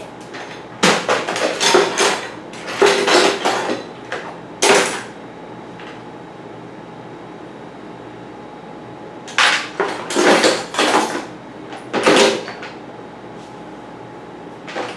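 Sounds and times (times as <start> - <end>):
metal parts and tools clattering: 0.3 - 3.9, 9.3 - 11.3.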